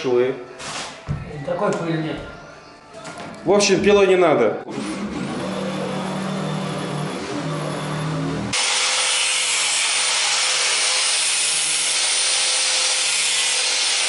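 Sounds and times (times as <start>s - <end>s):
power saw cutting wood: 4.7s - 14.0s.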